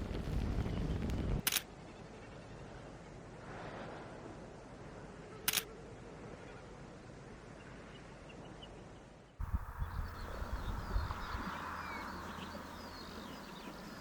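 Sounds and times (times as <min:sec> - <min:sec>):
wind rumble on microphone: 0:00.0 - 0:01.5, 0:09.4 - 0:14.0
camera shutter click: 0:05.5 - 0:05.7
faint bird calls: 0:09.4 - 0:14.0.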